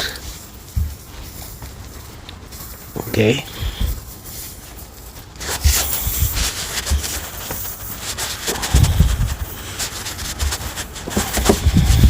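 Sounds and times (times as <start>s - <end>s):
wind rumbling on microphone: 5.5s - 7.2s, 8.5s - 12.0s.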